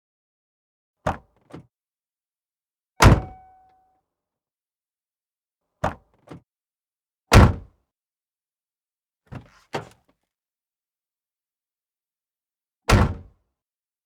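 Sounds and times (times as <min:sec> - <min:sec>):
car door latch clicks: 0:03.0 - 0:03.6
car door slamming: 0:03.0 - 0:03.6.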